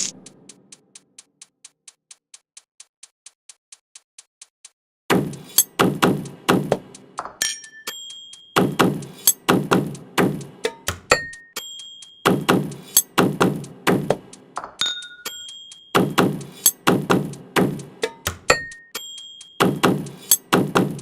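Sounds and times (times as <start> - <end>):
short ringing dings: 7.4 - 9.5, 14.8 - 16.8, 18.5 - 20.5.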